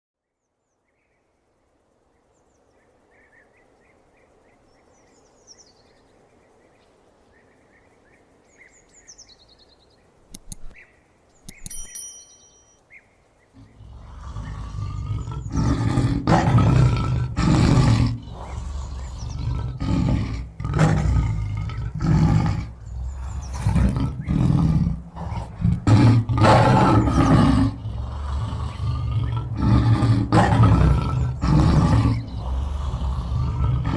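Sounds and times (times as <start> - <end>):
faint chirping: 0.2 - 16.2, 18.0 - 20.6, 21.2 - 25.6
low hiss: 0.2 - 33.9
sharp clicks: 10.3 - 10.8, 11.4 - 12.4
lion roaring and growling: 13.6 - 33.9.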